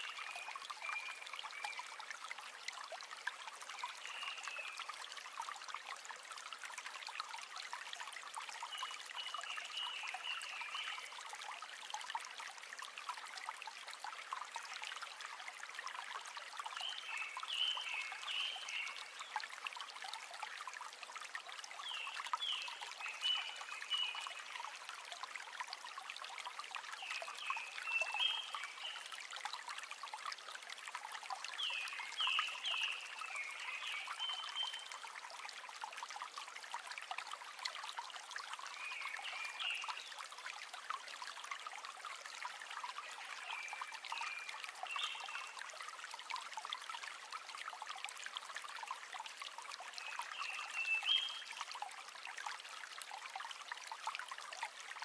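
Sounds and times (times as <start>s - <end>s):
river water running: 0.0s - 55.0s.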